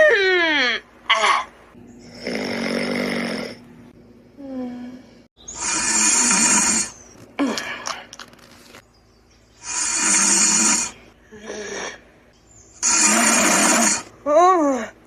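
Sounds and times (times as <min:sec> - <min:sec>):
loud snoring: 0:02.0 - 0:03.6, 0:05.6 - 0:07.0, 0:09.6 - 0:12.0, 0:12.8 - 0:14.1.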